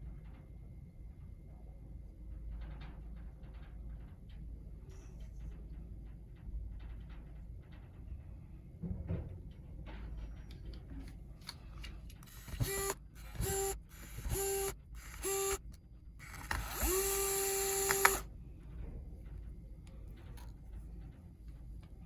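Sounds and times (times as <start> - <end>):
sharp click: 12.2 - 18.2
small electric motor whirring: 12.2 - 18.3.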